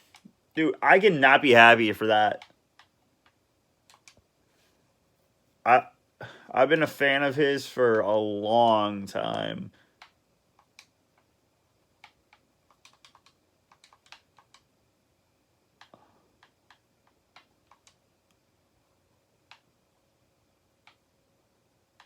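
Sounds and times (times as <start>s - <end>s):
faint keyboard typing: 0.0s - 0.6s, 2.3s - 4.3s, 7.9s - 14.7s, 15.7s - 18.4s, 19.4s - 20.1s.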